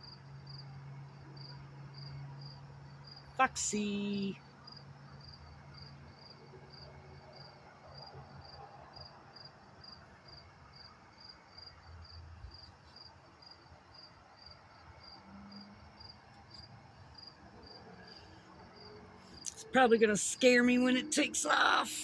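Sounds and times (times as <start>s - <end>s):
cricket chirping: 4.6s - 19.6s.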